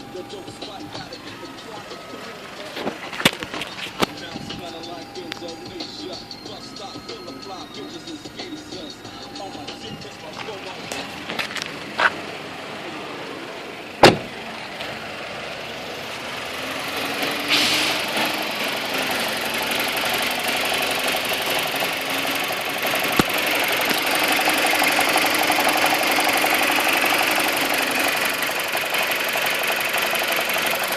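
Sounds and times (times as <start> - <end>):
car engine idling with rattle: 0.0 - 30.9.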